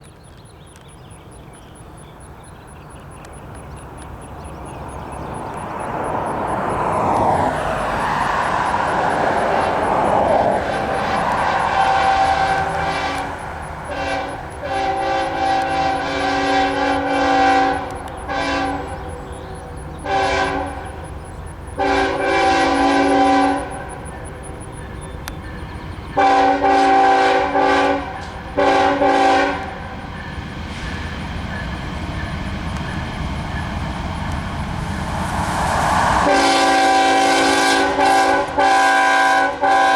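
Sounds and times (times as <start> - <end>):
diesel train rumble: 0.0 - 39.9
locomotive air horn blasts: 8.0 - 30.2, 36.2 - 39.9.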